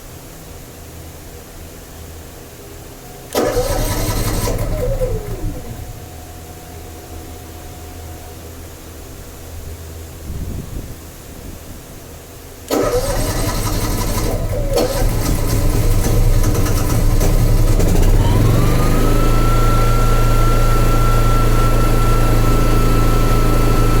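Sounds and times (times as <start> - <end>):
generator whine: 1.6 - 24.0
generator engine starting and running: 3.3 - 6.6, 12.7 - 24.0.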